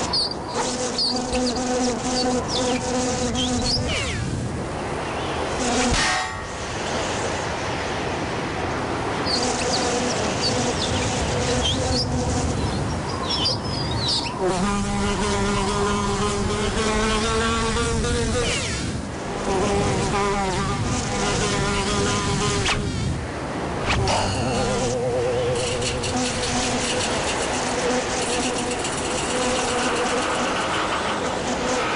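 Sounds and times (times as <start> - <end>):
insect-like buzzing tones: 0.0 - 4.3, 9.3 - 12.7, 23.9 - 31.9.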